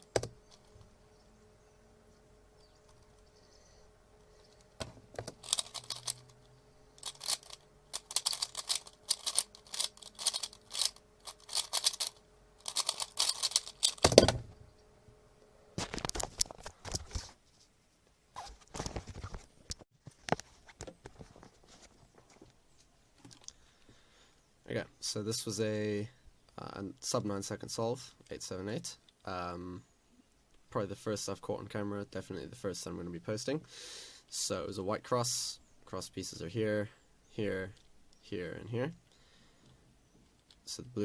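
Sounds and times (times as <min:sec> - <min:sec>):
handling clicks and knocks: 0:04.5 - 0:14.6
puzzle cube clicking: 0:05.2 - 0:06.4, 0:07.0 - 0:14.2.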